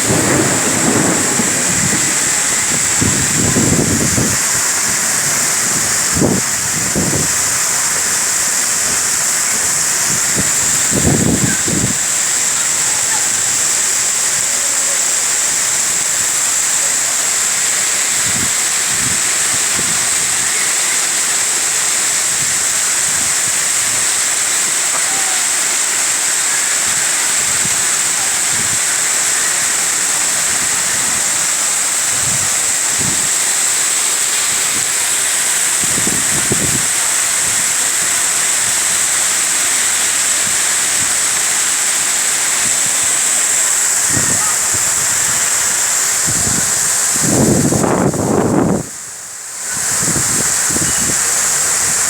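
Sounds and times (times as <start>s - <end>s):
low thumps: 0.0s - 6.0s
heavy rain pouring: 0.0s - 52.0s.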